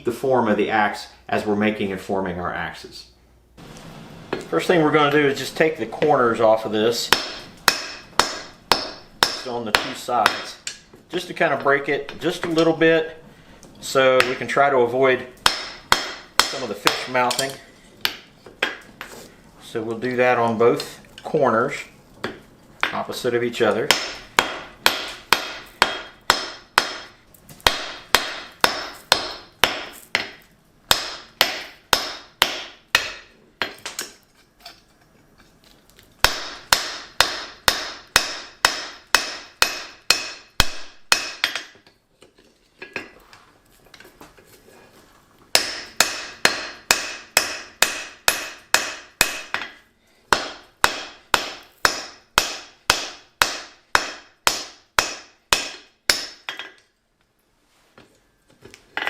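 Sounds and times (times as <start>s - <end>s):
hammer striking steel on anvil: 7.1s - 10.8s, 23.9s - 34.1s, 36.2s - 41.9s, 45.6s - 56.8s.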